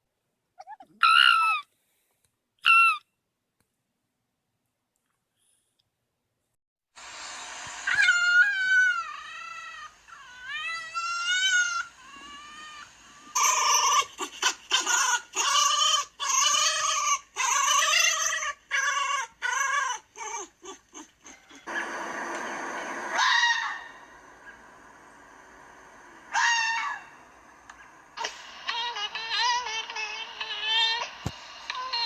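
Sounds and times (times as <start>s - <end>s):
fox whining cries: 0.6s - 1.7s, 2.6s - 3.0s, 7.8s - 21.8s, 23.1s - 24.6s, 26.3s - 29.7s
fox yelping: 0.6s - 1.7s, 2.6s - 3.0s, 7.8s - 21.8s, 23.1s - 24.6s, 26.3s - 28.4s.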